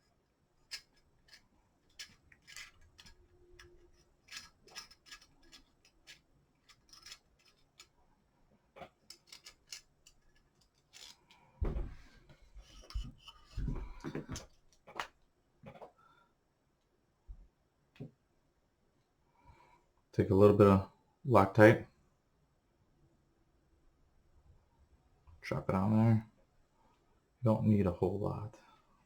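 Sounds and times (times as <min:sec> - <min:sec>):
metallic clicks and scrapes of screws: 0:00.0 - 0:08.0, 0:08.8 - 0:11.5, 0:12.6 - 0:13.6.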